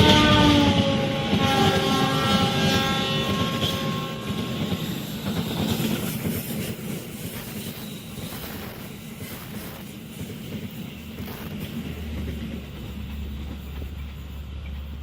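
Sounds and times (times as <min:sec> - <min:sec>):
train horn: 0:00.0 - 0:05.0
rumble of train wagons: 0:00.0 - 0:15.0.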